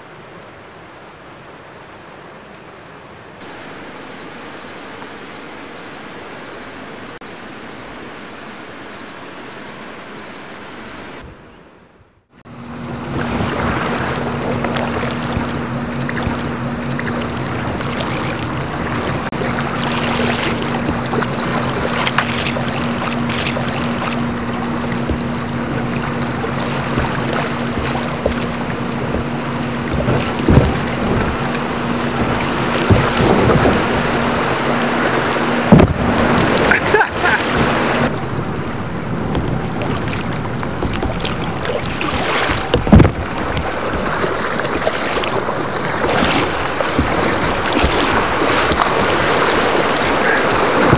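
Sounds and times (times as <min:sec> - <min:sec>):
river water rushing and splashing: 0:00.0 - 0:11.3, 0:12.3 - 0:50.9
steady low hum: 0:00.0 - 0:50.9
wind on microphone: 0:10.9 - 0:50.9.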